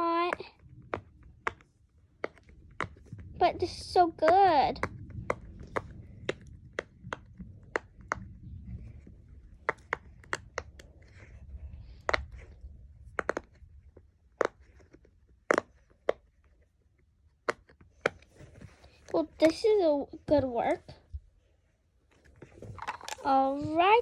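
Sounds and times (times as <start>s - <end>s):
fidget toy bubbles popping: 2.2s - 13.8s, 22.6s - 24.0s.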